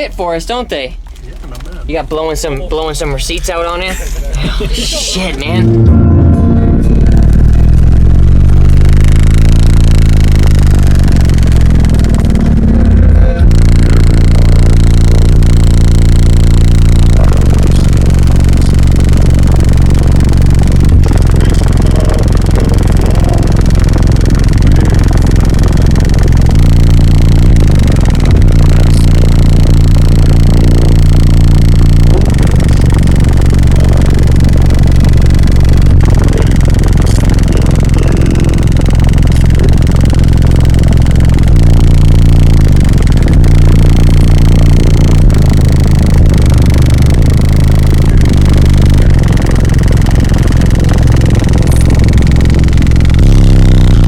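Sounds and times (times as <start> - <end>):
buzzing and rattling: 0.0 - 54.0
deep bass notes from subwoofers: 0.0 - 54.0.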